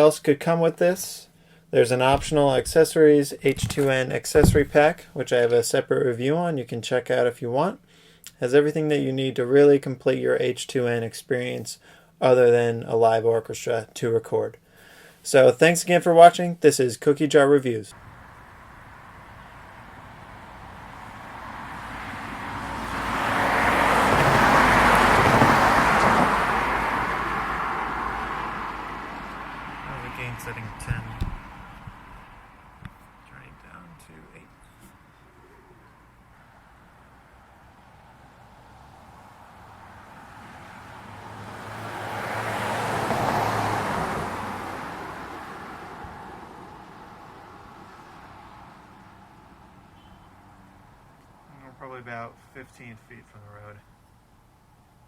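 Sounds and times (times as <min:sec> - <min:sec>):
car passing by: 0:17.9 - 0:33.8, 0:34.8 - 0:51.0.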